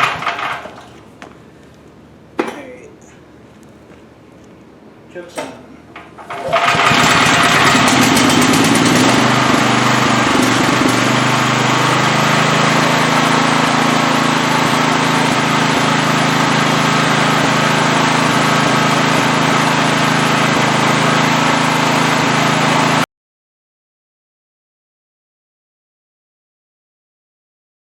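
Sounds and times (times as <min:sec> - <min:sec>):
generator engine running: 0:00.0 - 0:01.6, 0:05.1 - 0:23.0.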